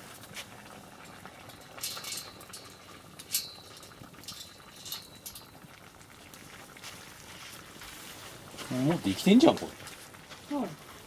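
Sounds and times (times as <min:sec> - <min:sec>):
metal utensil scraping pot: 0:01.5 - 0:05.6.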